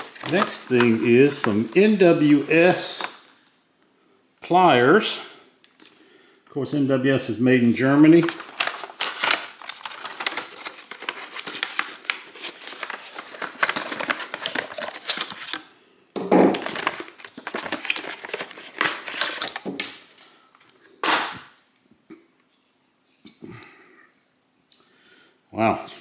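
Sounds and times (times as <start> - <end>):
packaging crackling and clicking: 0.0 - 2.0, 8.1 - 15.6, 16.5 - 21.4
sharp packaging rustle: 0.0 - 3.5, 7.7 - 15.7, 16.5 - 21.6.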